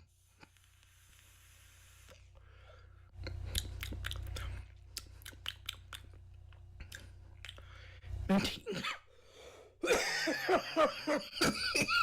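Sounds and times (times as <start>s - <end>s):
faint hiss of air: 0.0s - 3.0s
e-cigarette coil crackling: 0.4s - 2.4s.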